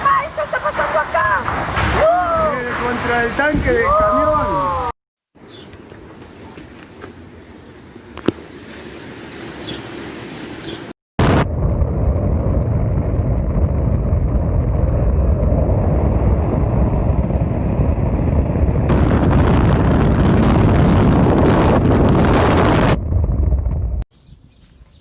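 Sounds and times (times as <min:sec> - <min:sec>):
storm wind on microphone: 0:00.3 - 0:04.9, 0:11.2 - 0:24.0.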